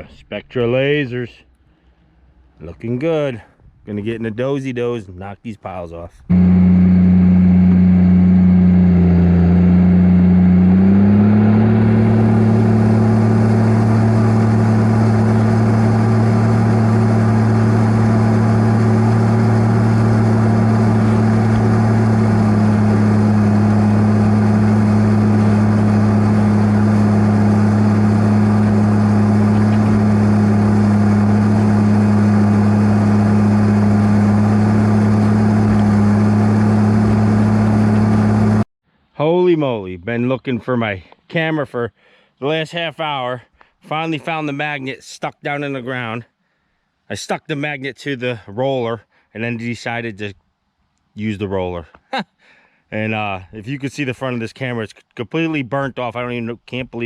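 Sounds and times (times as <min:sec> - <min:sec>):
diesel engine running under load: 0:06.3 - 0:38.7.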